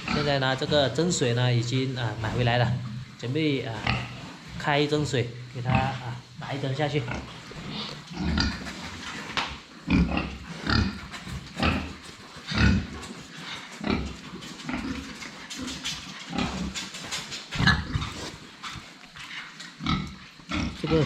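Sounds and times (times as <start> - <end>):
pigs grunting: 0.0 - 21.0.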